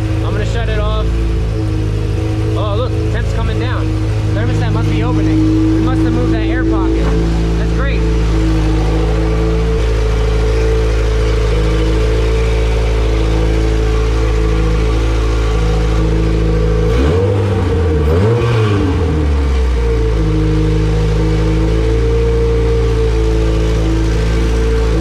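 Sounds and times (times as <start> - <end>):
car engine idling and revving: 0.0 - 25.0.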